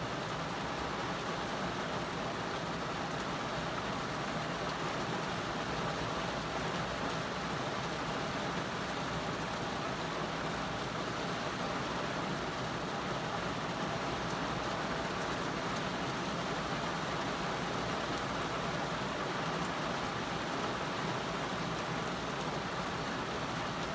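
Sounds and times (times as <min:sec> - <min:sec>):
rain falling on a car: 0:00.0 - 0:23.9
faint raindrop ticks: 0:01.4 - 0:09.4, 0:13.8 - 0:23.9.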